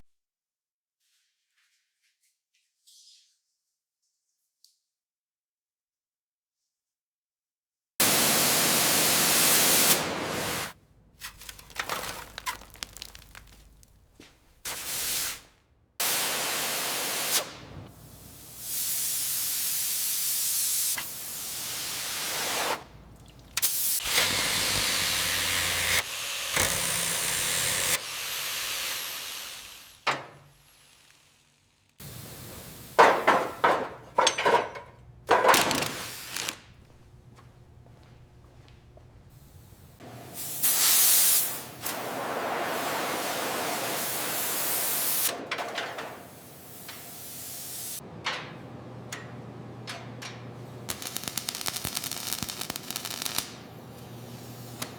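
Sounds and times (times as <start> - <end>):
hissing spray bursts: 8.0 - 10.8, 14.6 - 23.0, 39.3 - 45.3, 46.3 - 48.0.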